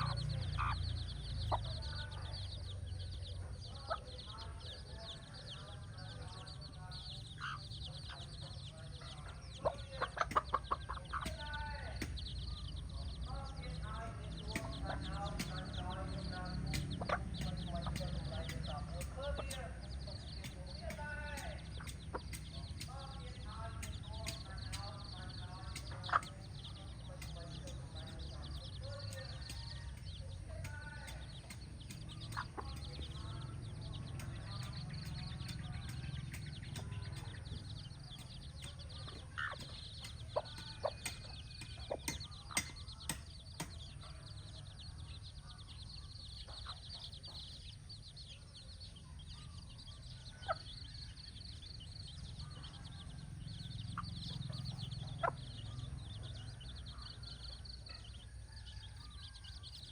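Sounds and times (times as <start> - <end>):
hen clucking: 0.0 - 44.2, 52.5 - 59.9
sharp clicks: 14.5 - 23.2, 25.7 - 43.9.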